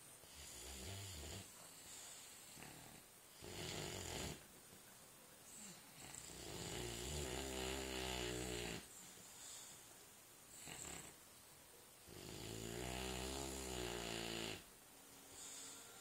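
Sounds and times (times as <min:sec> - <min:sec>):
person snoring: 0:00.2 - 0:04.5, 0:06.0 - 0:08.9, 0:10.6 - 0:11.2, 0:12.1 - 0:14.7.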